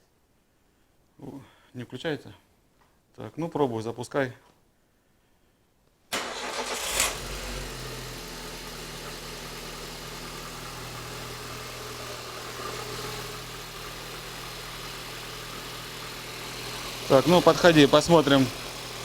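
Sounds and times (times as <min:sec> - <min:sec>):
car engine idling: 0:06.2 - 0:19.0.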